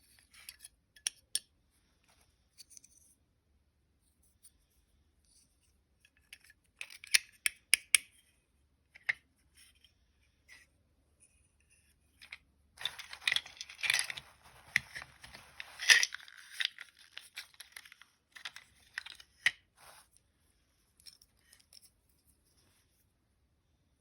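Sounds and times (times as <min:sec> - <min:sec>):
small hard parts clicking: 0:12.2 - 0:19.6.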